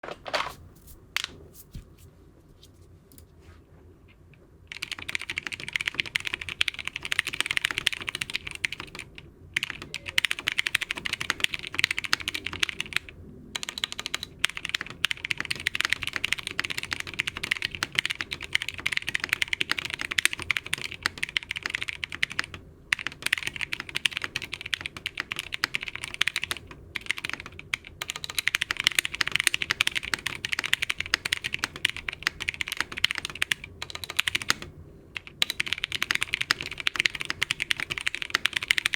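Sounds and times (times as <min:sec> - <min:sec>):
fast typing on mechanical keyboard: 0:04.7 - 0:38.9.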